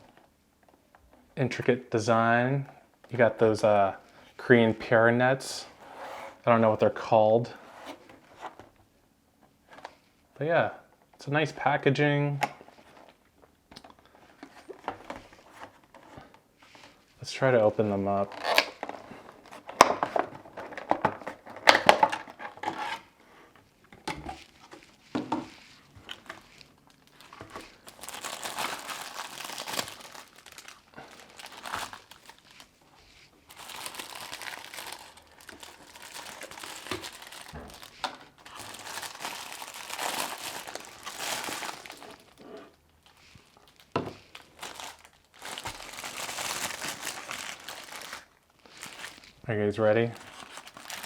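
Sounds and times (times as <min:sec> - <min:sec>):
plastic packaging crinkling: 0:18.2 - 0:22.6, 0:25.9 - 0:32.8, 0:33.4 - 0:51.0.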